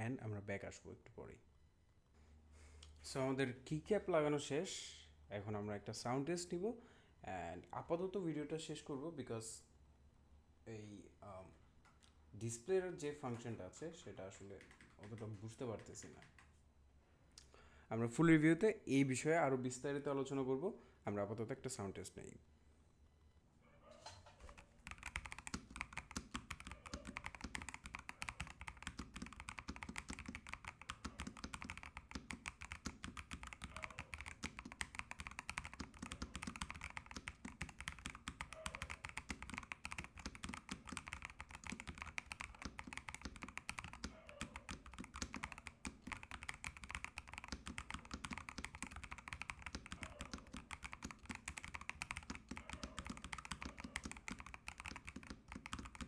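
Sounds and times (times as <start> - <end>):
fast mechanical keyboard typing: 14.1 - 16.5, 24.4 - 56.0.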